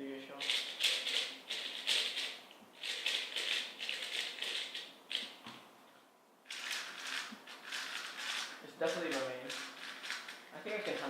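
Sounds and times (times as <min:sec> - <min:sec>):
plastic puzzle cube clicking turns: 0:06.5 - 0:08.6, 0:09.5 - 0:10.4.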